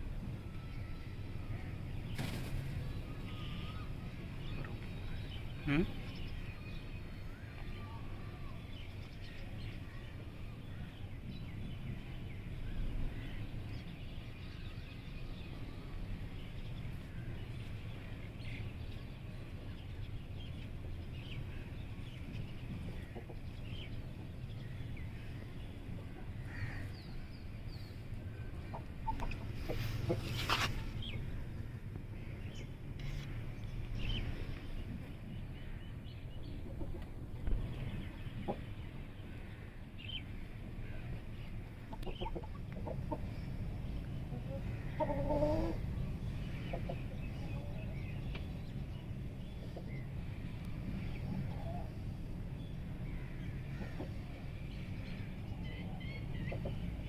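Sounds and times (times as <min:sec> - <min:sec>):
steady low rumble: 0:00.0 - 0:57.0
chickens clucking: 0:28.2 - 0:31.2, 0:36.5 - 0:38.8, 0:41.6 - 0:48.6, 0:53.4 - 0:54.5, 0:55.4 - 0:57.0.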